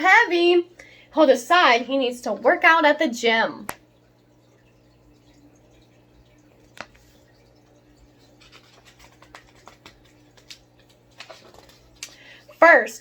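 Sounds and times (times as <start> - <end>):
low steady hum: 0.0 - 13.0
page ticks and rustles: 6.6 - 7.2, 8.2 - 12.4.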